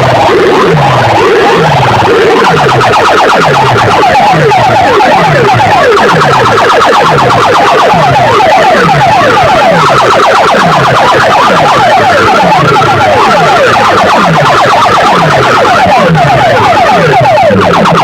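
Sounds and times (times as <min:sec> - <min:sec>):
falling bass tone: 0:00.0 - 0:02.8
electronic siren effect: 0:00.0 - 0:18.0.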